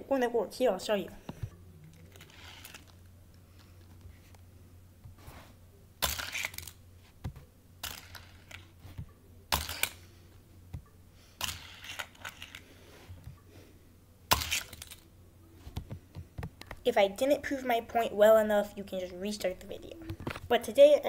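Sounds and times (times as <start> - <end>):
toy car clattering on plastic track: 7.8 - 8.6.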